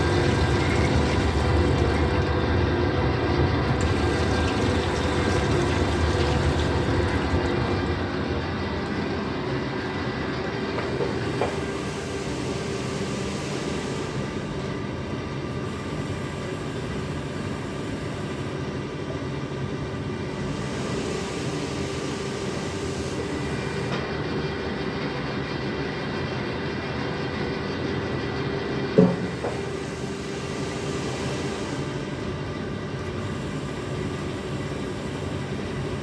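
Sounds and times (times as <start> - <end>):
washing machine droning and whining: 0.0 - 36.0.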